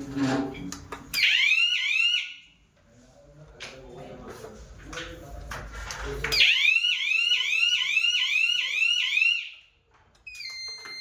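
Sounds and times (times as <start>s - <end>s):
fire alarm whooping: 1.2s - 2.5s, 6.4s - 9.7s, 10.3s - 11.0s.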